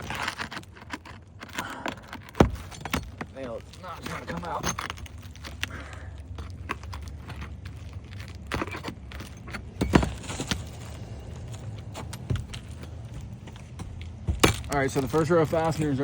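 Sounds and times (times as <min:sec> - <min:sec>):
pry bar scraping and knocking: 0:00.0 - 0:11.0.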